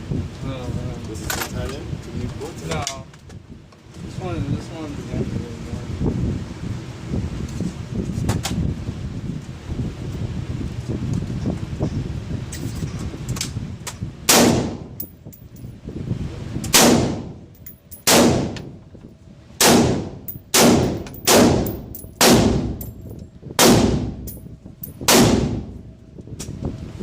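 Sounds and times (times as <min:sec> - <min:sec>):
gunshots: 0:18.0 - 0:18.6, 0:19.6 - 0:22.7, 0:23.6 - 0:24.2, 0:25.1 - 0:25.7.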